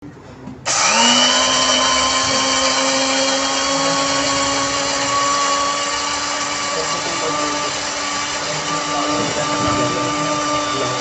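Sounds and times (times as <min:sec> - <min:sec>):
electric spice grinder whining: 0:00.7 - 0:11.0.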